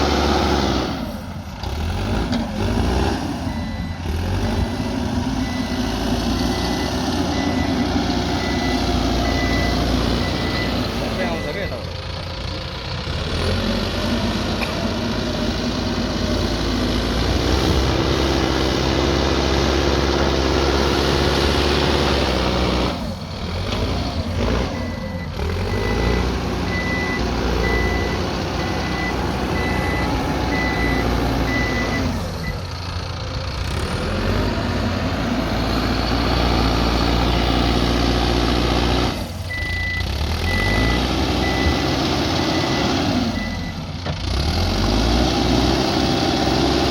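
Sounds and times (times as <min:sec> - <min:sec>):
diesel engine revving: 0:00.0 - 0:46.9
reversing alarm beeping: 0:03.4 - 0:11.9, 0:24.6 - 0:32.6, 0:39.5 - 0:43.9.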